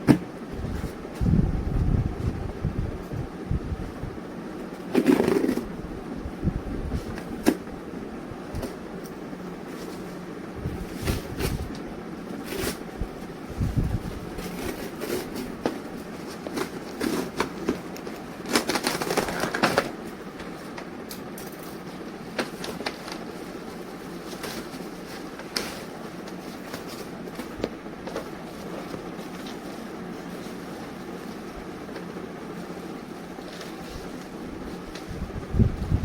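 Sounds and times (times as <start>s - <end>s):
steady background hum: 0.0s - 36.0s
packaging crinkling: 16.2s - 20.0s.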